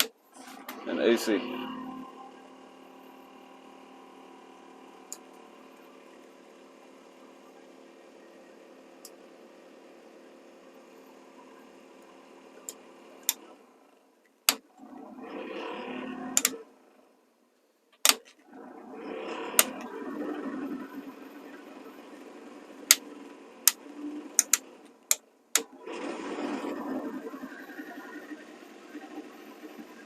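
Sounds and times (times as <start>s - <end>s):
sharp clicks: 16.4s - 16.6s, 18.0s - 18.4s, 22.9s - 25.7s
blower fan running: 18.5s - 30.0s.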